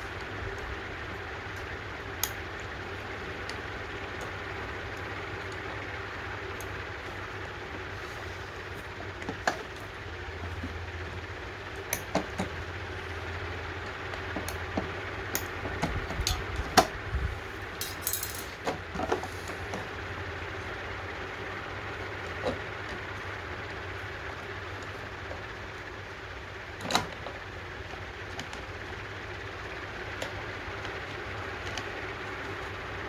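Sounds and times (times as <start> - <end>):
steady low hum: 0.0 - 33.0
metal parts and tools clicking: 17.7 - 18.6.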